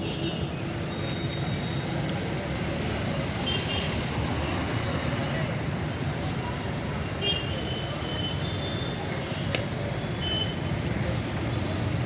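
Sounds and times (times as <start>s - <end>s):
traffic rumble: 0.0s - 12.0s.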